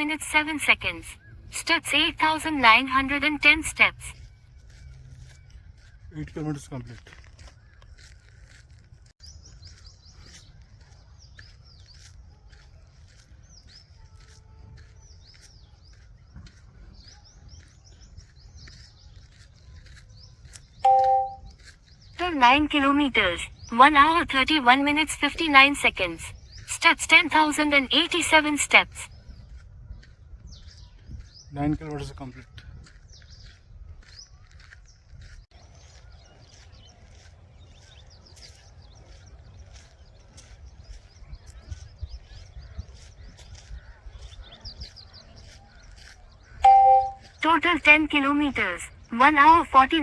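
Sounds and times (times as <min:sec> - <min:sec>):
small birds chirping: 0:00.1 - 0:50.0
footsteps walking: 0:04.0 - 0:22.2, 0:29.1 - 0:49.9.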